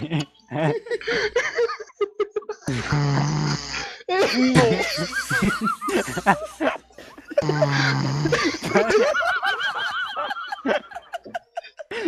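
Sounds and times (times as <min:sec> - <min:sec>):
people laughing: 0:00.0 - 0:12.0
loud snore over headset: 0:02.7 - 0:04.0, 0:07.4 - 0:09.0.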